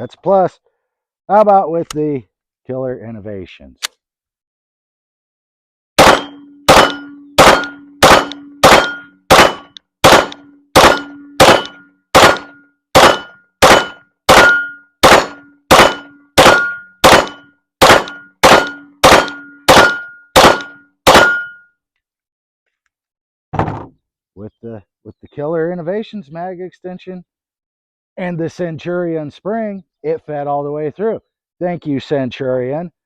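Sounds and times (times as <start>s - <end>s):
pistol shots: 6.0s - 21.6s
steel target ringing: 6.0s - 21.7s.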